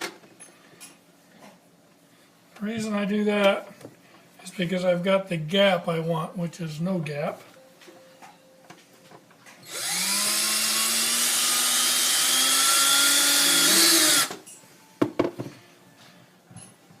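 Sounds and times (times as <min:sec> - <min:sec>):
power drill drilling: 0:09.6 - 0:14.4.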